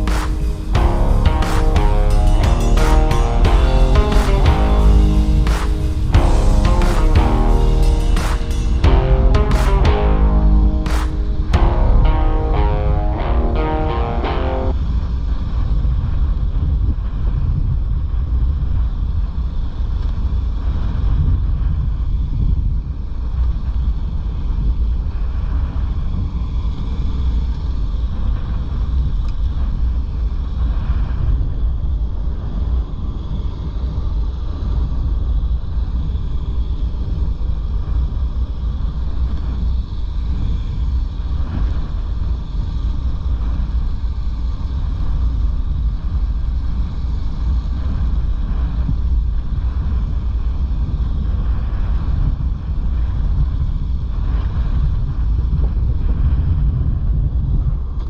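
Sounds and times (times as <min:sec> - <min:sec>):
wind buffeting microphone: 0:27.7 - 0:58.0.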